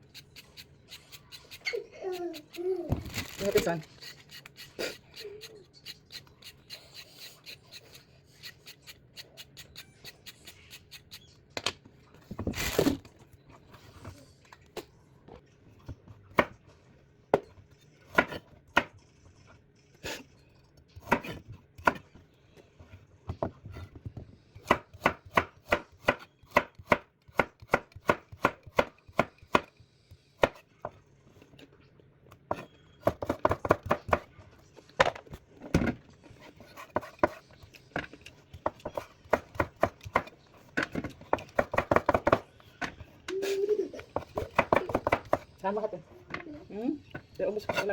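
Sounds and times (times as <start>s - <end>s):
knife chopping on cutting board: 18.1s - 18.9s, 21.0s - 22.0s, 24.6s - 29.7s, 30.4s - 30.6s, 32.5s - 34.3s, 35.8s - 43.0s, 44.1s - 45.5s.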